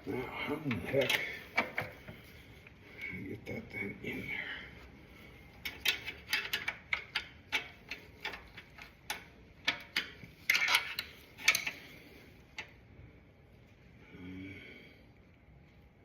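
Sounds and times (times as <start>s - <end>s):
hand tools clicking on metal: 5.6s - 11.9s.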